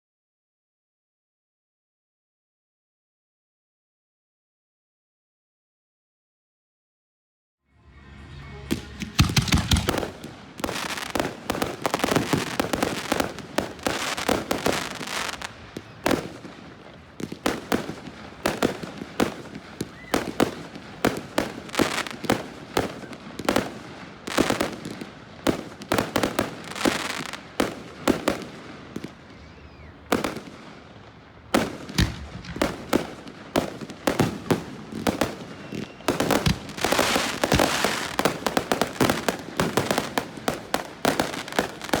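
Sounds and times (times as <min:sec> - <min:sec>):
fireworks bangs and crackling: 0:08.6 - 0:42.0.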